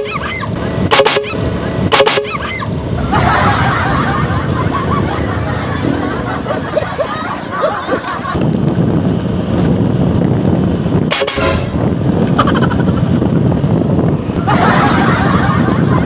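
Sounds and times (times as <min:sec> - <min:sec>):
engine running: 0:00.0 - 0:16.0
street noise: 0:00.0 - 0:16.0
vehicle horn honking: 0:00.9 - 0:02.5, 0:11.1 - 0:12.1.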